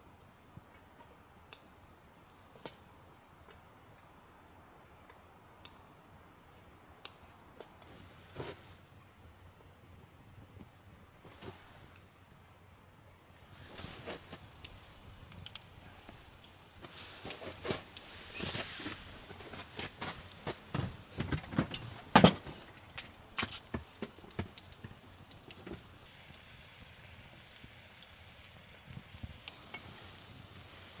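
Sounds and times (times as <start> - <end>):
food sizzling in a hot pan: 13.8 - 19.2, 23.9 - 31.0.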